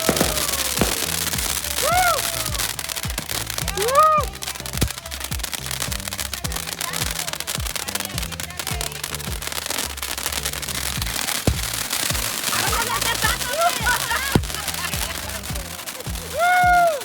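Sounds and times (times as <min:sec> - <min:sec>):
short whoop: 0:00.0 - 0:02.8, 0:03.6 - 0:04.4, 0:16.1 - 0:17.0
deep kick drum: 0:00.0 - 0:16.8
bass line: 0:00.0 - 0:17.0.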